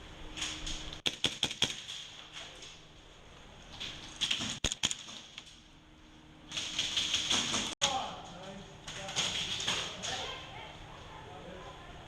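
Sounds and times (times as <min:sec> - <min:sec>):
airsoft guns firing: 0:01.0 - 0:02.2.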